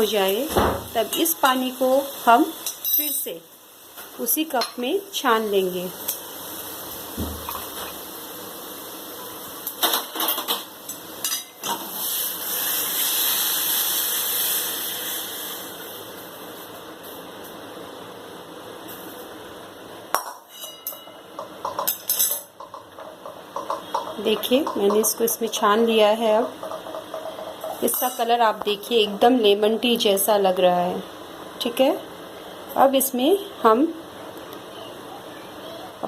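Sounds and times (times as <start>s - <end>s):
metal pan and strainer clinking: 20.2s - 25.6s, 26.6s - 28.3s.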